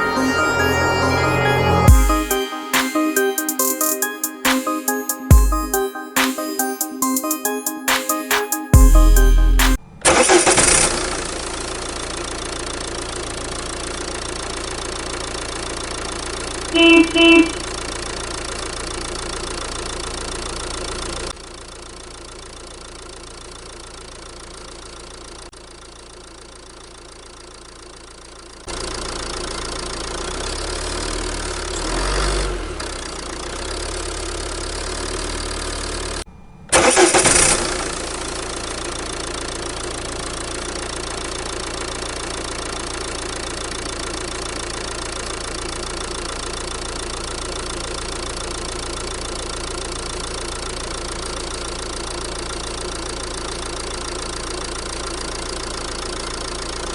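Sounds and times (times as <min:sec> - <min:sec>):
cartoon vehicle engine: 0:00.0 - 0:26.0, 0:28.6 - 0:56.9
short beeps: 0:16.8 - 0:17.7.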